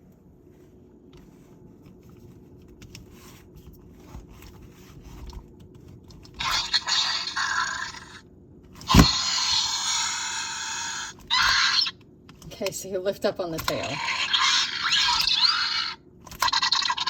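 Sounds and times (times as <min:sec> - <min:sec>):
toy raspy screech: 0:06.4 - 0:08.2, 0:08.8 - 0:12.0, 0:13.7 - 0:17.0.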